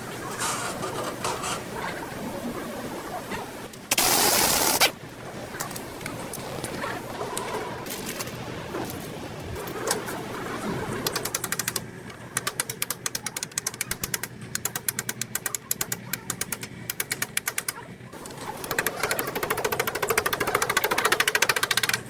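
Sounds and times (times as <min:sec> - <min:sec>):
wrench clicking rapidly: 0:11.0 - 0:22.0.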